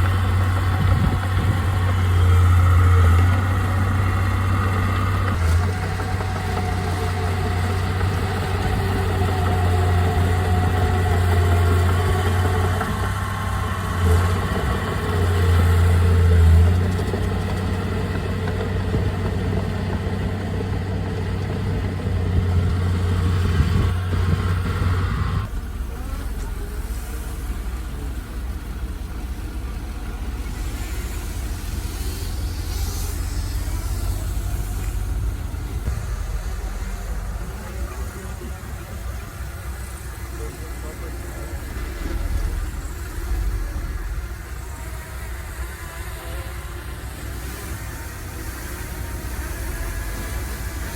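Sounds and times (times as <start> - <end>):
heavy diesel engine humming: 0.0 - 50.9.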